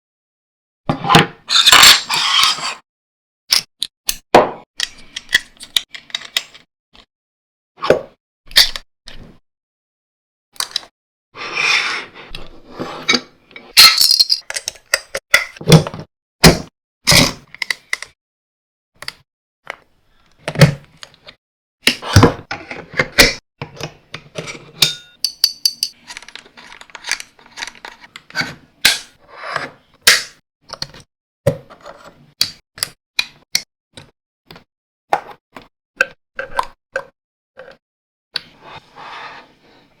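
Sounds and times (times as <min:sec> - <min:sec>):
metal parts clicking and clinking: 0:13.8 - 0:14.8, 0:24.8 - 0:27.8.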